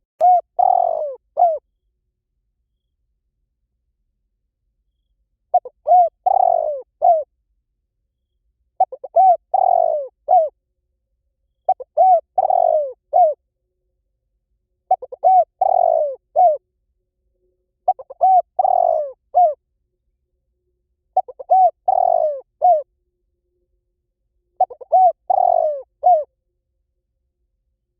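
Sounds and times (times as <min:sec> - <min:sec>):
dove cooing: 0:00.2 - 0:01.6, 0:05.5 - 0:07.3, 0:08.8 - 0:10.5, 0:11.7 - 0:13.4, 0:14.9 - 0:16.6, 0:17.8 - 0:19.6, 0:21.2 - 0:22.9, 0:24.6 - 0:26.3.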